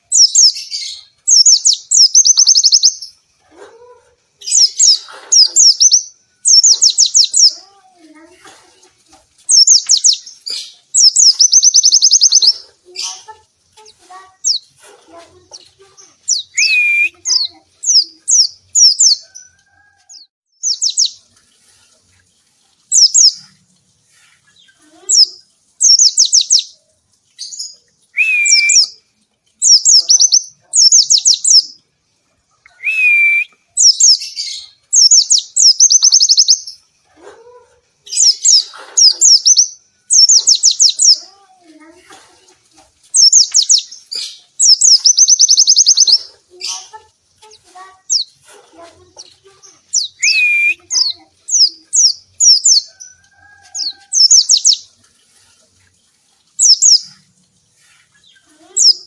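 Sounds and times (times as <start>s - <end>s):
bird chirps and trills: 0.0s - 3.2s, 3.8s - 8.4s, 9.4s - 21.8s, 22.8s - 26.8s, 27.4s - 31.8s, 32.7s - 36.8s, 38.0s - 41.9s, 43.0s - 55.0s, 56.5s - 59.0s
clear bird whistle: 16.4s - 17.3s, 28.2s - 29.0s, 32.8s - 34.1s, 50.0s - 51.0s.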